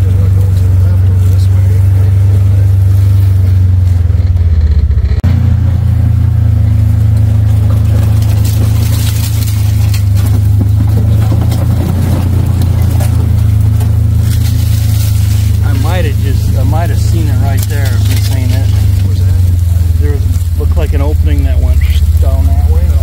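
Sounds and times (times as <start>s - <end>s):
vehicle engine droning: 0.0s - 23.0s
light rattling and rustling: 6.6s - 23.0s.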